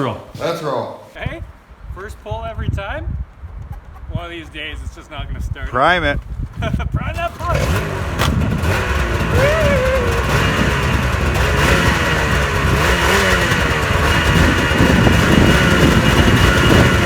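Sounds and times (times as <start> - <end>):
snowmobile engine revving: 7.1 - 17.0.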